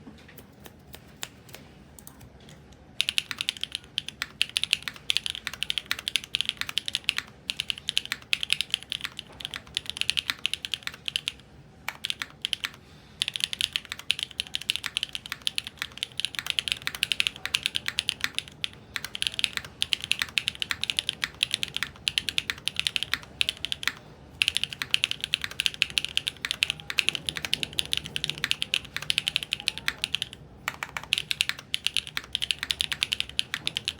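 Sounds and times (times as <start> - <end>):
rapid mechanical keyboard typing: 1.0 - 33.9.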